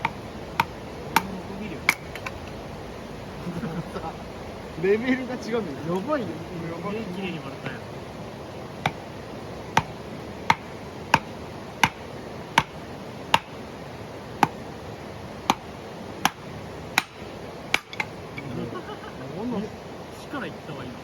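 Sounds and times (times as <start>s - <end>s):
blade striking into log: 0.0s - 1.3s, 10.5s - 12.0s, 12.6s - 13.6s, 17.0s - 18.1s.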